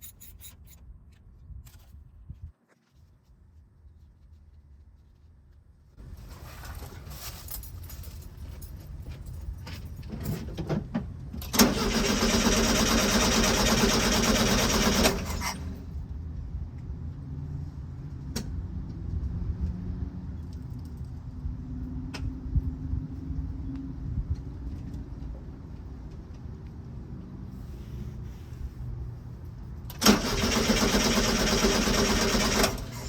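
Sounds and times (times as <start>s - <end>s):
keys jangling: 0.0s - 0.9s, 7.2s - 10.6s
car starter cranking: 11.4s - 15.8s, 29.9s - 33.0s.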